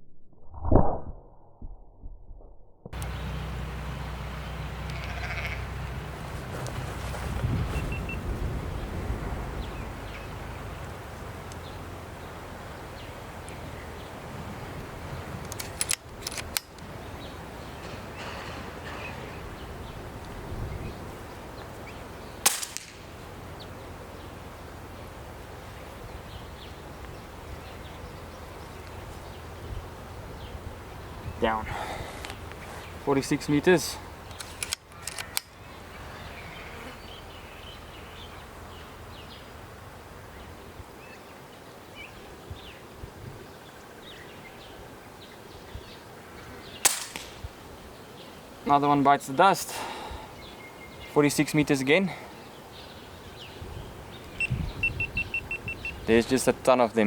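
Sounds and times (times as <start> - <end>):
low wind rumble: 1.1 - 49.1, 52.3 - 57.0
faint distant calls: 3.0 - 42.3, 43.7 - 57.0
silenced air rifle shot: 22.4 - 23.2, 46.8 - 47.6.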